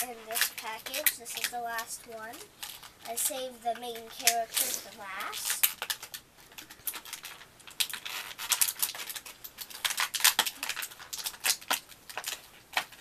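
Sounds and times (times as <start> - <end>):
plastic packaging crinkling: 0.0 - 13.0.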